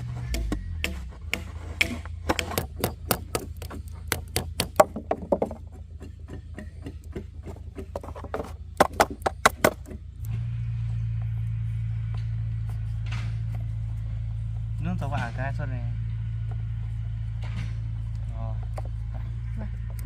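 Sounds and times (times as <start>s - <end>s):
tools knocking on wood: 0.0s - 10.0s
low steady hum: 0.0s - 20.0s.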